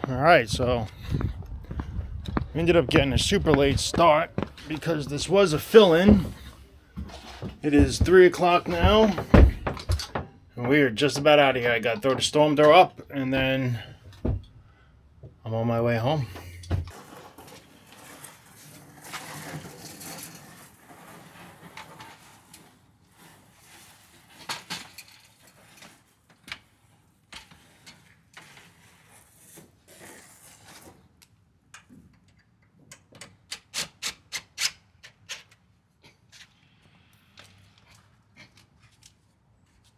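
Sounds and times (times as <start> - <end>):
rubbing and scraping: 2.6 - 10.0, 16.8 - 31.2
knocks: 7.4 - 10.3.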